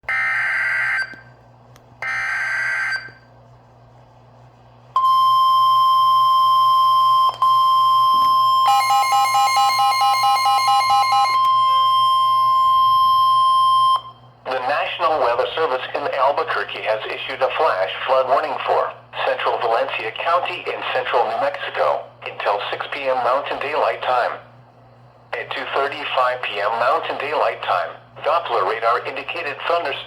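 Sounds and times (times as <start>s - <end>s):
steady warning alarm tone: 0.1s - 1.4s, 2.0s - 3.3s, 5.0s - 14.3s.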